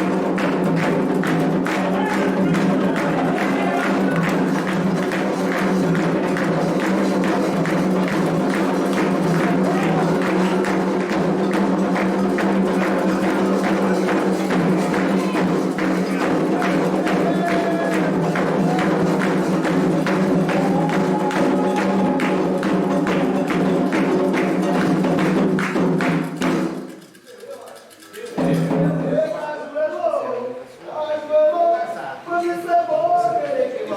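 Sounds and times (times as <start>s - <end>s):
hand drums beating steady rhythm: 0.0s - 29.4s
group singing: 1.6s - 5.4s, 9.1s - 25.0s.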